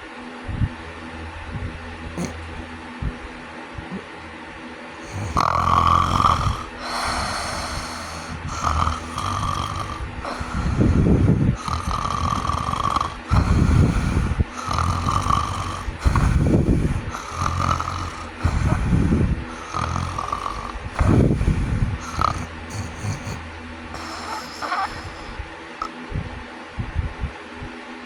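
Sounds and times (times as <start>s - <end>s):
person snoring: 2.1s - 2.6s, 5.0s - 26.0s.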